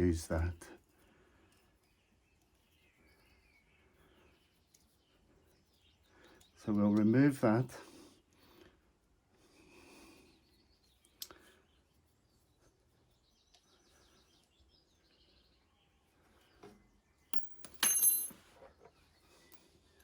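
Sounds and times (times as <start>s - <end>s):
sharp ringing metal clink: 17.4s - 18.4s.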